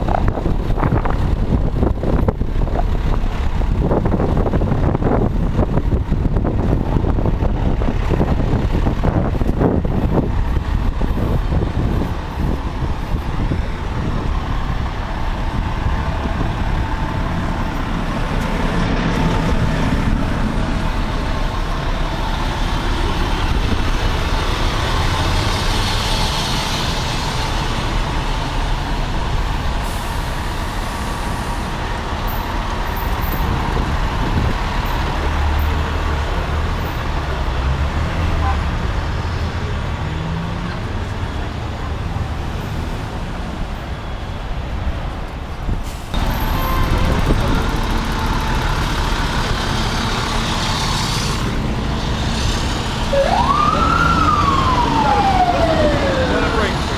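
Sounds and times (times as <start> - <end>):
diesel engine rumbling: 0.0 - 56.9
air brakes hissing: 29.8 - 31.8, 45.8 - 47.1, 50.7 - 53.1.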